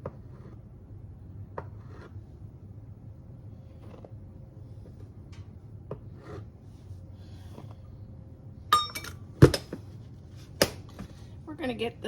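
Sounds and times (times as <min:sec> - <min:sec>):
sharp ringing clink: 0:08.7 - 0:09.2.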